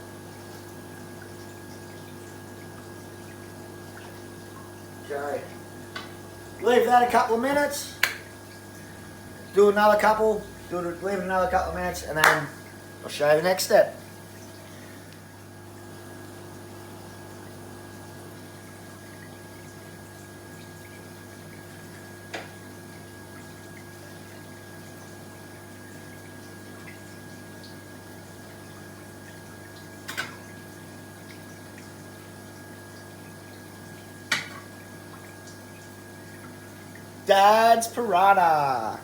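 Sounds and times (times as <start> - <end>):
faint water trickle: 0.0 - 39.0
steady low hum: 5.0 - 12.7.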